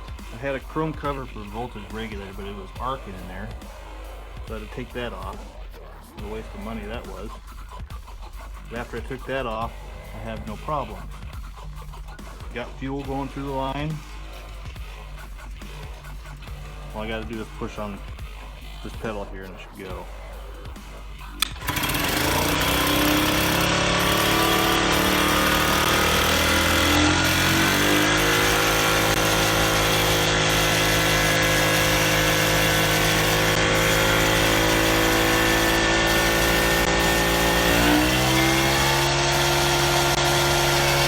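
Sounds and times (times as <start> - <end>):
golf cart engine starting and running: 0.0 - 7.4, 8.7 - 11.0, 20.7 - 41.0.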